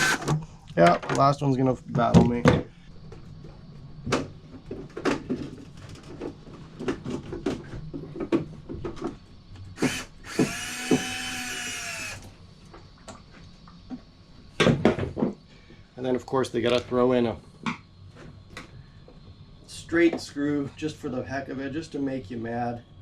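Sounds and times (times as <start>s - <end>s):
power drill spinning: 0.0s - 0.4s, 9.8s - 12.3s
tool knocking on screw: 9.8s - 12.2s.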